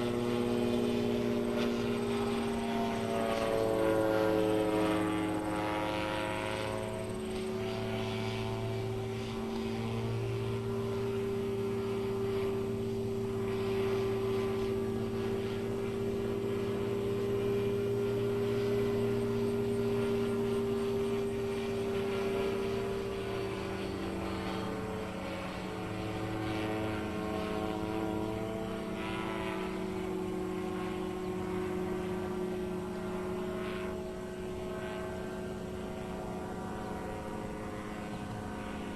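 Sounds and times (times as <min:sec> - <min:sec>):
airplane propeller engine drone: 0:00.0 - 0:38.9.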